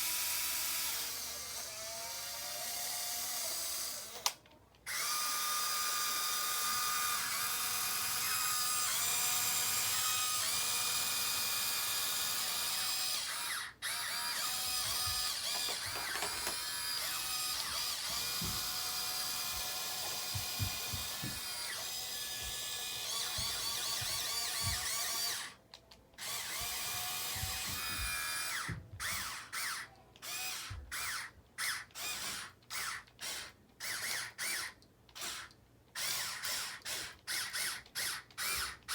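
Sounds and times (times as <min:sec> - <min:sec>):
small electric motors whining: 0:00.0 - 0:25.6, 0:26.2 - 0:38.9.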